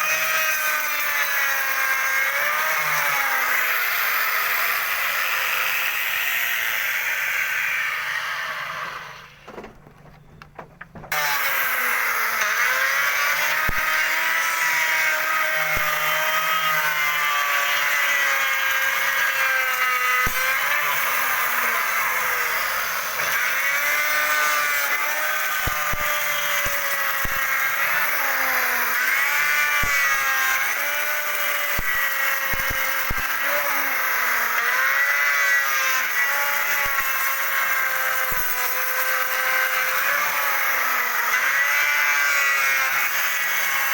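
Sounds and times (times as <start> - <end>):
wood router cutting wood: 0.0 - 43.9.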